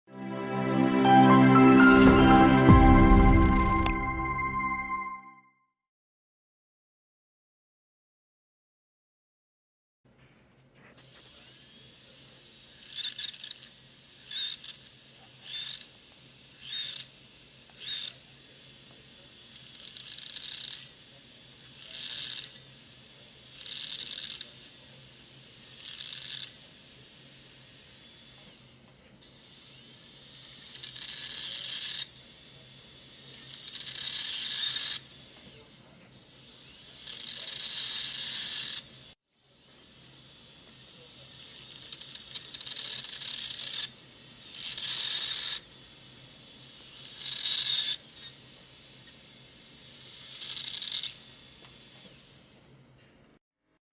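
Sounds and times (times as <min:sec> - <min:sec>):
surgical drill cutting: 0:11.0 - 0:52.6.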